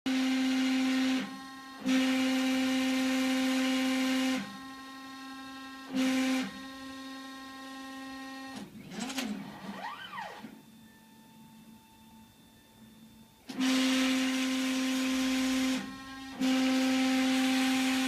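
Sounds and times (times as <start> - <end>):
quiet motor hum: 6.5 - 18.0
stepper motors whining: 8.8 - 10.6.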